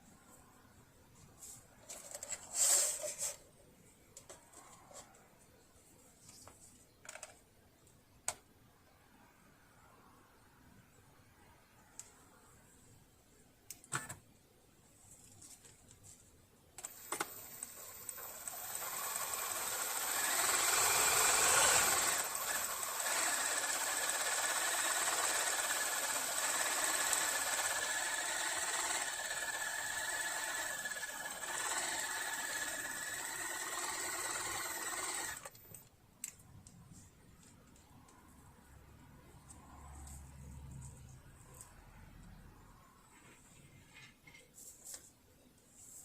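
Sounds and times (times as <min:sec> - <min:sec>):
sewing machine running: 0:16.8 - 0:35.7.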